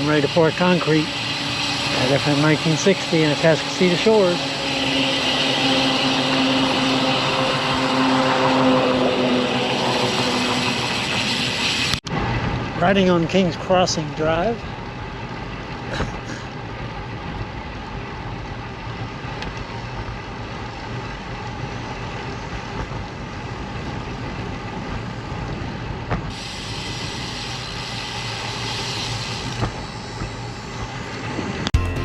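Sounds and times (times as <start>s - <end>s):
wind and road noise: 0.0s - 31.8s
bright hiss: 26.3s - 31.2s.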